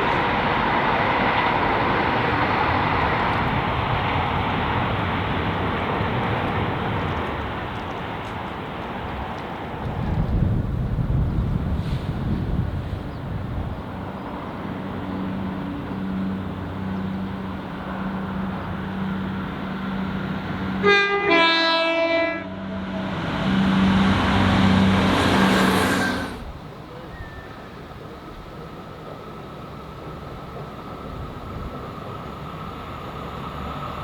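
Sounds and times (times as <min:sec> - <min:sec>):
wheel and rail noise: 0:00.0 - 0:21.5, 0:22.2 - 0:34.0
diesel train engine running: 0:00.0 - 0:34.0
two-tone train horn: 0:20.8 - 0:24.0.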